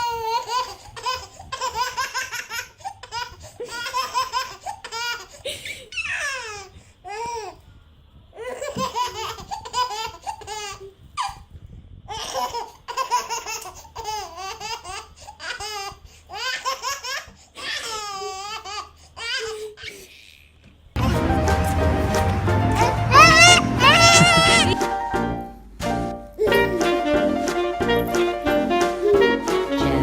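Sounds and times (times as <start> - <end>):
baby laughing: 0.0 - 7.3, 8.4 - 11.4, 12.1 - 20.4, 22.6 - 24.8, 26.4 - 27.1.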